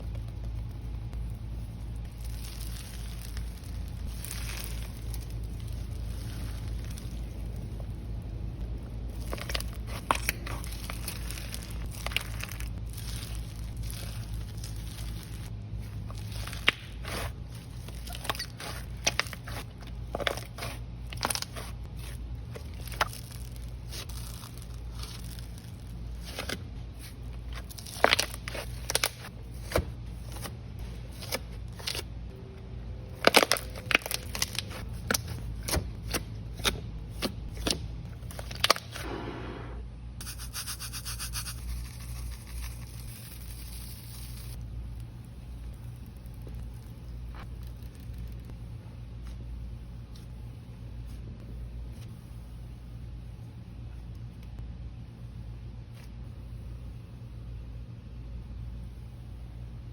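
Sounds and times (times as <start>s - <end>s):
crunchy slime crackling: 0.0s - 32.4s, 33.0s - 39.0s, 40.5s - 48.6s.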